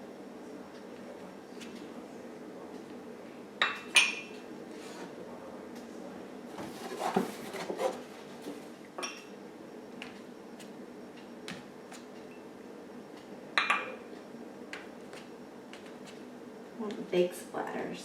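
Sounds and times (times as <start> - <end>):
clinks against ceramic cup: 3.6 - 4.3, 9.0 - 9.3, 13.6 - 14.0.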